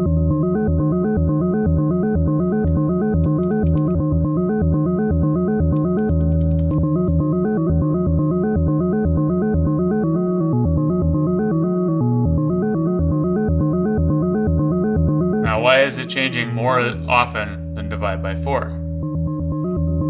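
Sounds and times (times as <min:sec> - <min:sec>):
synthesizer sequence: 0:15.4 - 0:18.3.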